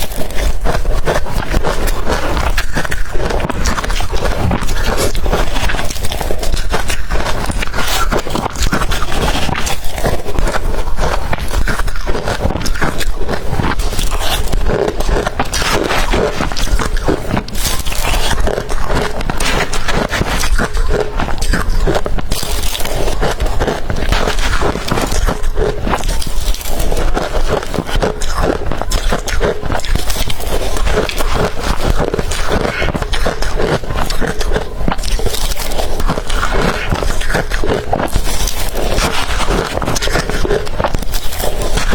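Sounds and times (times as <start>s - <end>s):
crunching ice: 0.0s - 41.9s.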